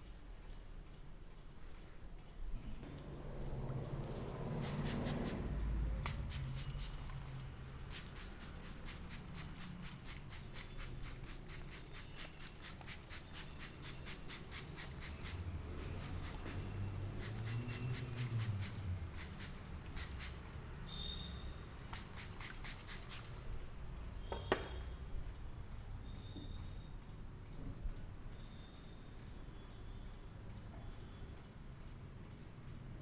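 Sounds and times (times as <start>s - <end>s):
hands rubbing skin and hair: 4.6s - 5.5s, 6.1s - 20.4s, 22.0s - 23.3s.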